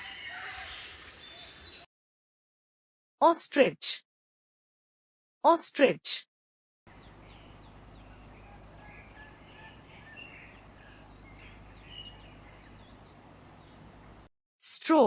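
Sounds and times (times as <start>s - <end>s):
birds chirping: 0.0s - 1.9s, 6.9s - 14.3s.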